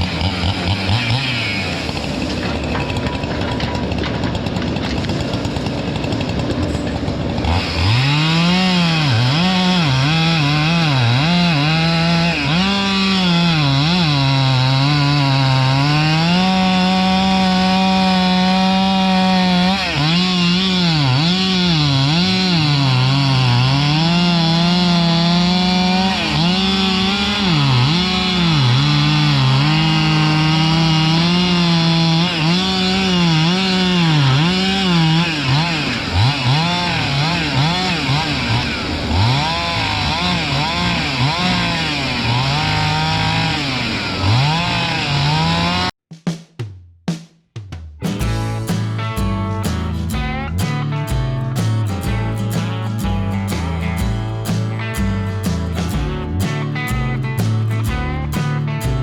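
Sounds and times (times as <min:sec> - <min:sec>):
steady engine noise: 0:00.0 - 0:10.8, 0:24.0 - 0:45.3
chainsaw cutting wood: 0:00.0 - 0:46.0, 0:48.1 - 0:59.0.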